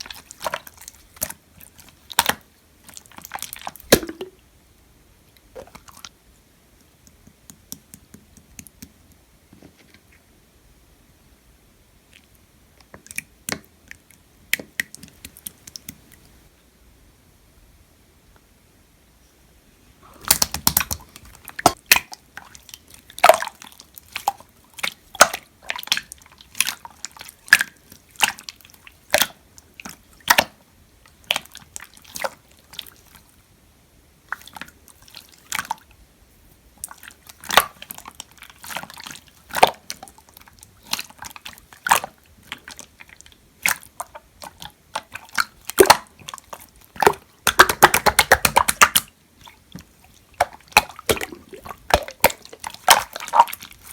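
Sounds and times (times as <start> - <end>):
slime squished by hand: 0.0 - 4.4, 20.1 - 30.6, 36.8 - 53.9.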